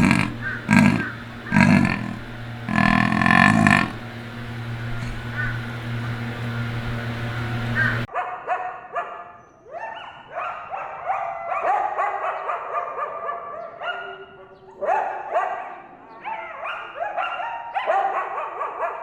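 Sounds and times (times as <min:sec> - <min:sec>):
animal yelping calls: 0:00.0 - 0:04.0, 0:04.9 - 0:05.7
steady low hum: 0:00.0 - 0:08.1.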